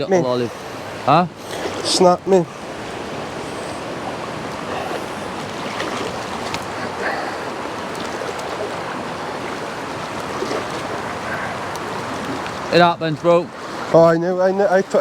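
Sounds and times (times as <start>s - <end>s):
stream rushing: 0.0s - 15.0s.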